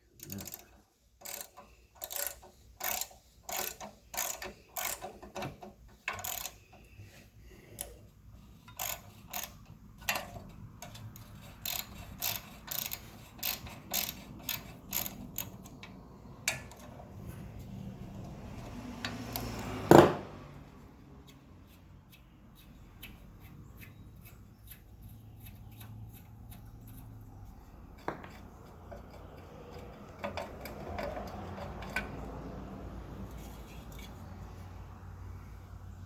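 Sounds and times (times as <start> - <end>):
ratchet wrench clicking: 0.2 - 6.9, 7.7 - 17.0, 17.6 - 19.8.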